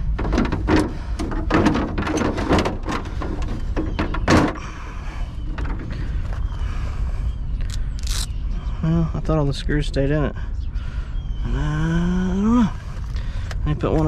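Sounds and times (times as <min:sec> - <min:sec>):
scrap parts knocking and clattering: 0:00.0 - 0:04.8, 0:05.4 - 0:06.4.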